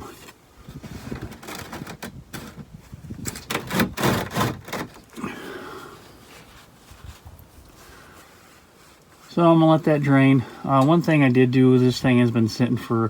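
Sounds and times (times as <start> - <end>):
clattering knocks and scrapes: 0.1 - 5.2.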